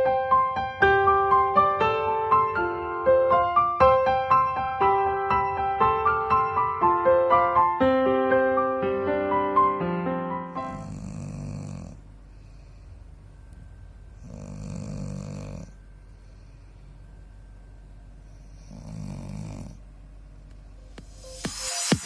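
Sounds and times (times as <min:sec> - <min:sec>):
man snoring: 0:10.6 - 0:12.7, 0:14.2 - 0:15.8, 0:18.4 - 0:19.8.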